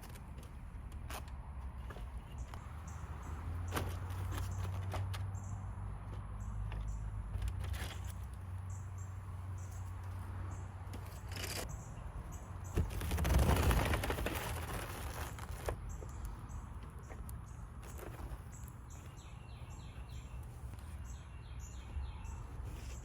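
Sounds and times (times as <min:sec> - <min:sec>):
scraping rustle: 0:11.0 - 0:11.7, 0:12.6 - 0:16.3, 0:22.5 - 0:23.0.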